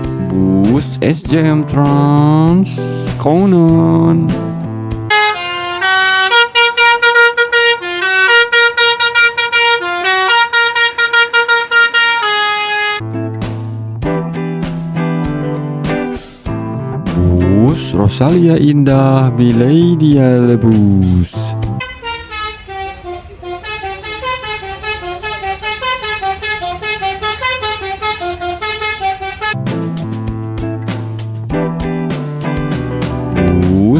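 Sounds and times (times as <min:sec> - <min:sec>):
multi-tone air horn playing a tune: 0:05.1 - 0:13.0, 0:21.8 - 0:29.6.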